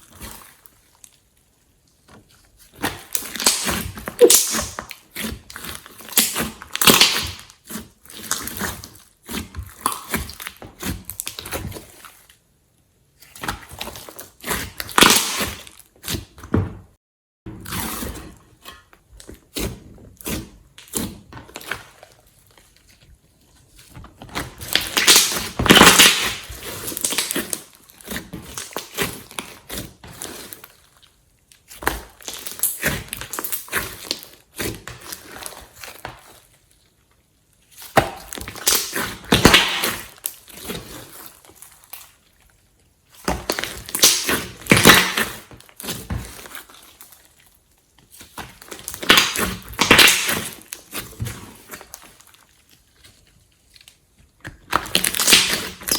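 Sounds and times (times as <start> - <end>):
slime squishing and popping: 2.7 - 5.3, 6.1 - 7.6, 13.3 - 16.2, 24.4 - 29.8, 31.7 - 36.0, 37.7 - 40.6, 43.2 - 47.1, 48.2 - 52.2, 54.4 - 55.9.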